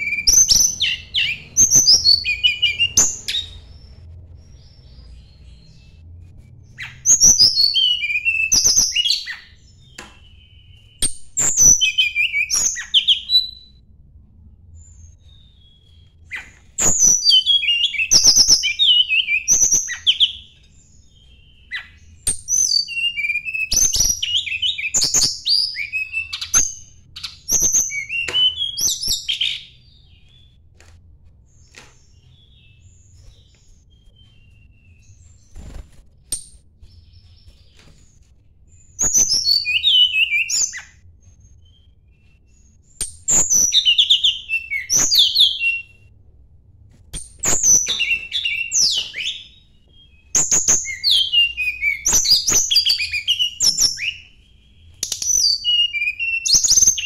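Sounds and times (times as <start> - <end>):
songbird singing whistled phrases: 0.0 - 3.6, 6.8 - 13.7, 15.9 - 30.1, 38.8 - 46.0, 47.4 - 57.0.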